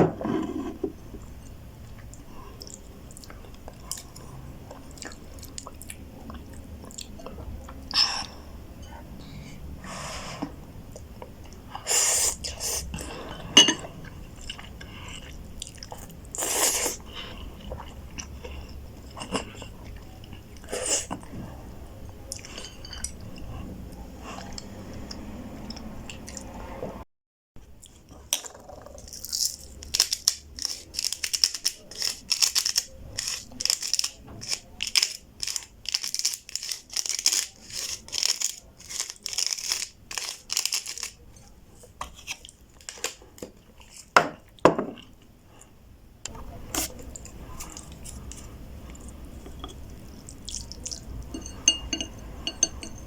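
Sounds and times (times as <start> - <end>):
chewing noodles: 2.0 - 7.9, 14.4 - 21.4, 46.7 - 53.0.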